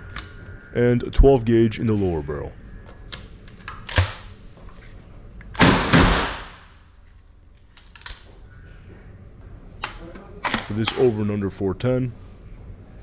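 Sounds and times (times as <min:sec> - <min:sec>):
shotgun shots echoing: 0:05.6 - 0:06.8.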